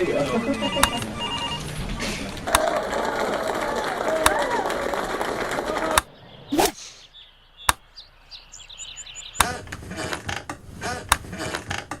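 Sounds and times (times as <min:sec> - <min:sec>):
sharp click: 0:00.8 - 0:01.1.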